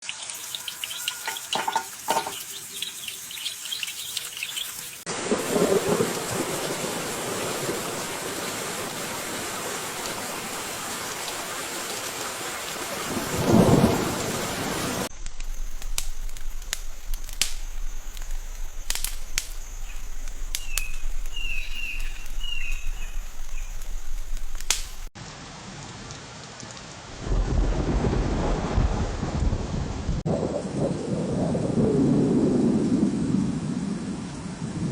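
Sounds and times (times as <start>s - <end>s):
heavy rain: 0.1s - 30.9s
bird chirps: 0.4s - 5.0s, 15.6s - 25.1s
thunder rumble: 5.1s - 11.4s, 12.8s - 25.1s, 27.2s - 34.9s
sharp clicks: 15.2s - 25.1s.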